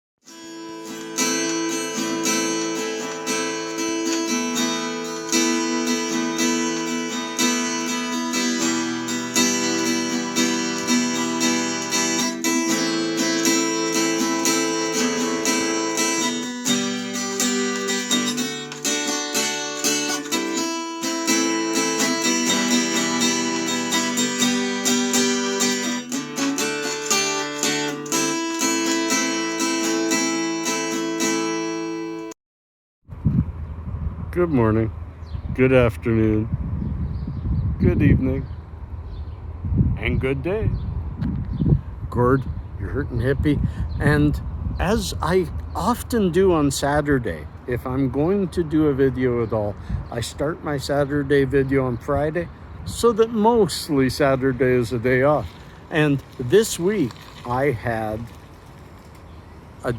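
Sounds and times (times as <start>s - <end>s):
strummed acoustic guitar: 0.2s - 32.3s, 52.9s - 59.2s.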